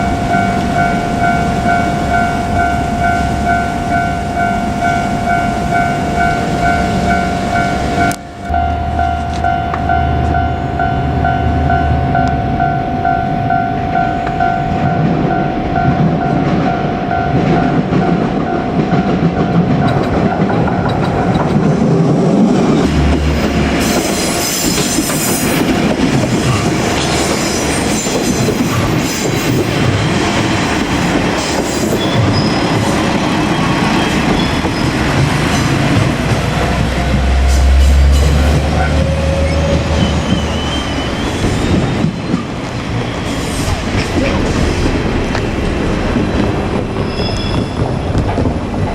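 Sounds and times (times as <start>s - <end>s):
level crossing alarm ringing: 0.0s - 21.6s
train wheels clattering: 13.8s - 48.9s
wheel squeal: 31.6s - 35.1s, 37.4s - 42.4s, 46.9s - 48.5s.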